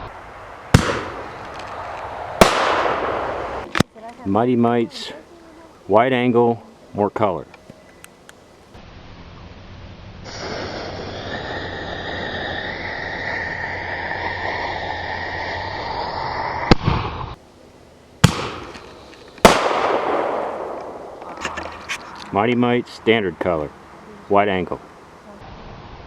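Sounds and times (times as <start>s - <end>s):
firework bangs: 0.0s - 3.8s, 10.2s - 17.4s, 18.2s - 23.6s
firework fuse hissing: 10.2s - 17.4s, 18.2s - 22.9s.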